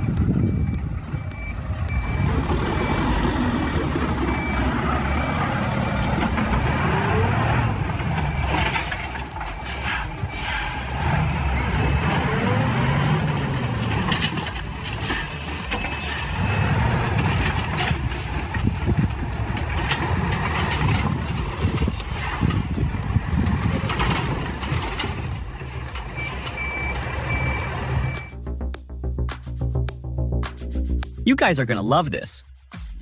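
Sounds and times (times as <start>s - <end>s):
heavy diesel machinery running: 0.0s - 28.4s
short high beep: 26.2s - 28.4s.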